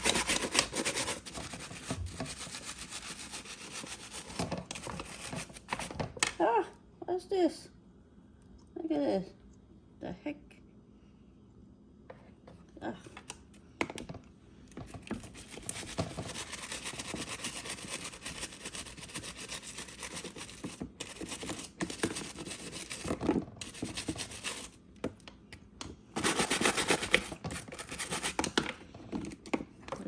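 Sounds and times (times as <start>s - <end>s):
bottle brush scrubbing: 0.0s - 4.4s, 15.3s - 23.0s.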